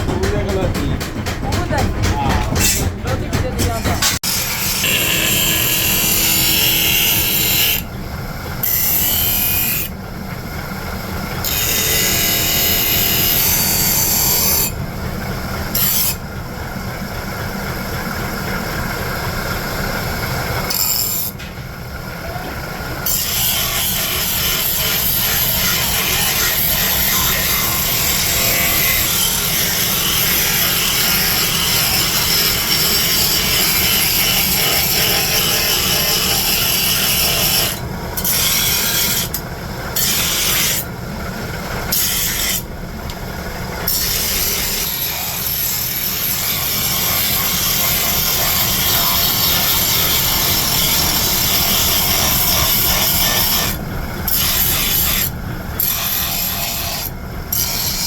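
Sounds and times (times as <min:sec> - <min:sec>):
steel grinding against abrasive: 0:00.0 - 0:07.9, 0:15.7 - 0:16.2, 0:23.0 - 0:40.9, 0:41.7 - 0:42.7, 0:43.8 - 0:58.0.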